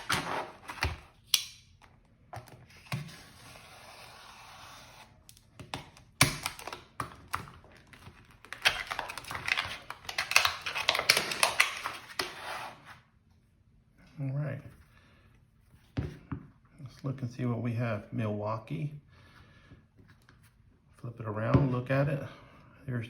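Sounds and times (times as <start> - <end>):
packaging rustling: 0.0 - 1.2, 5.8 - 12.4
packaging being opened by hand: 0.0 - 1.3, 5.2 - 12.8.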